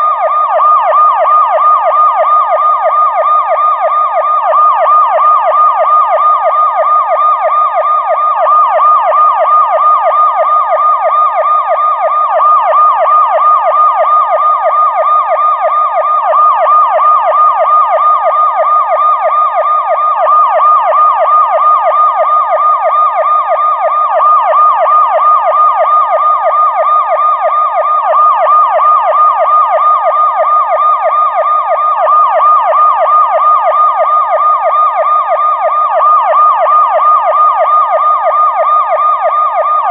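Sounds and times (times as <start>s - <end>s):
police siren yelp: 0.0s - 39.9s.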